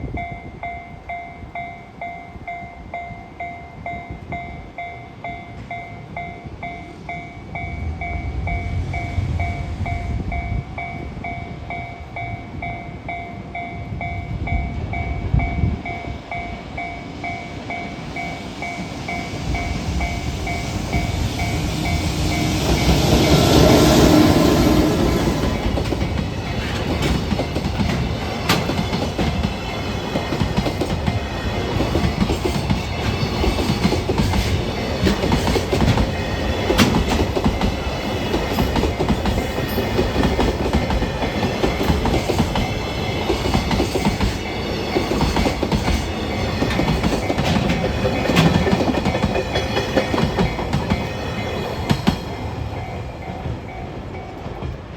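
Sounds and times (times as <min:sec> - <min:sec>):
electric locomotive passing: 0:00.0 - 0:54.9
wheels clattering over rail joints: 0:25.3 - 0:52.4.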